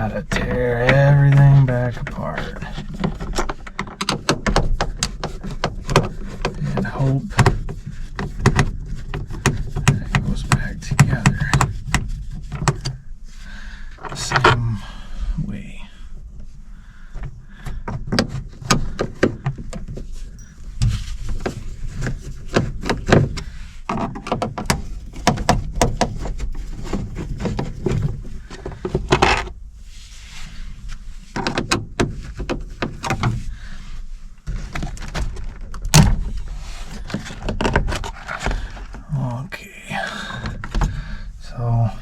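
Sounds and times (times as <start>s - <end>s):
plastic parts clicking and knocking: 0.0s - 13.0s, 20.8s - 29.5s, 34.5s - 39.0s.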